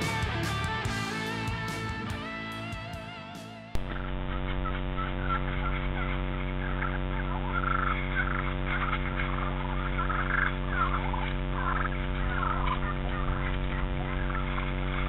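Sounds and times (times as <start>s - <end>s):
electrical hum: 0.0s - 15.0s
flock of fowl calling: 4.7s - 14.8s.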